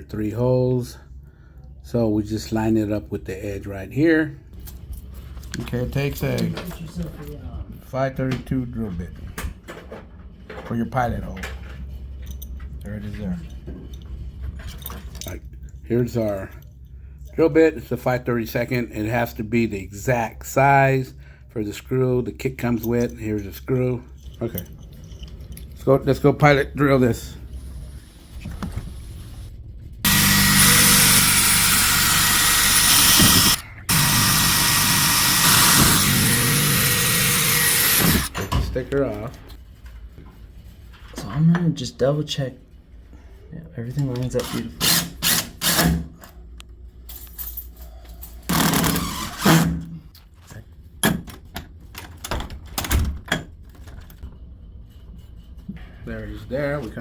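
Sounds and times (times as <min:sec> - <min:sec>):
electric drill boring: 0:30.1 - 0:38.3, 0:48.5 - 0:49.7.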